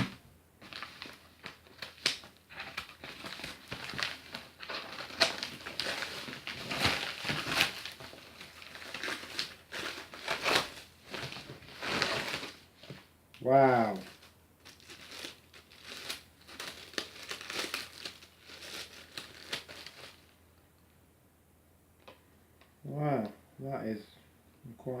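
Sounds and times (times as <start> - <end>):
packaging rustling and crumpling: 0.0 - 13.1, 13.9 - 20.4
packet tearing open: 0.7 - 12.6, 14.0 - 20.3.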